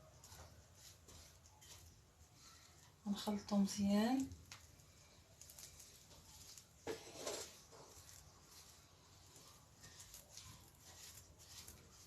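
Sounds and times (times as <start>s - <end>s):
spoon scraping in a bowl: 6.4s - 12.0s.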